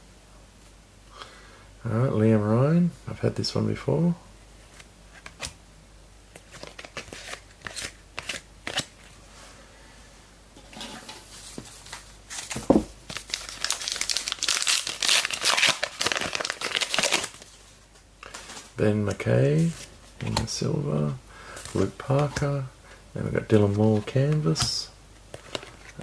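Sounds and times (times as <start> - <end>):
wrapper tearing and crinkling: 13.1 - 17.6.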